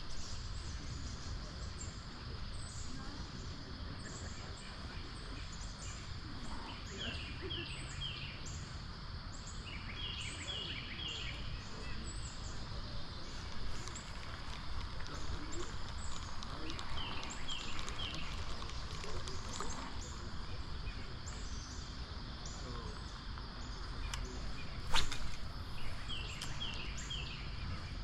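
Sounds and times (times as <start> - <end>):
small bird chirping: 9.3 - 28.0.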